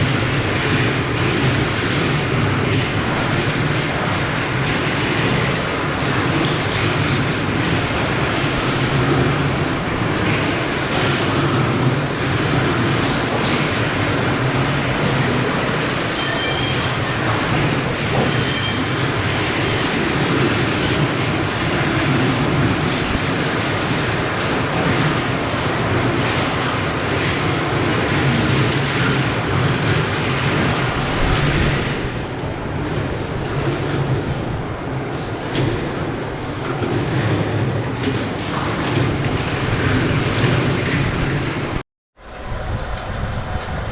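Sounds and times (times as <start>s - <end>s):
factory machinery humming and clattering: 0.0s - 43.9s
brief high pings: 16.2s - 16.9s.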